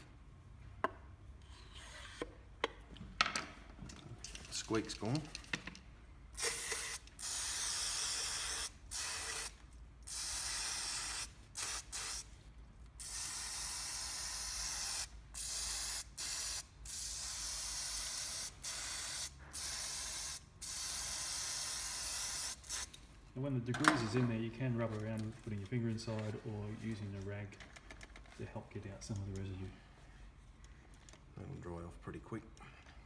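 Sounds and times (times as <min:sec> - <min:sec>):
aerosol spray hissing: 0:06.4 - 0:12.3.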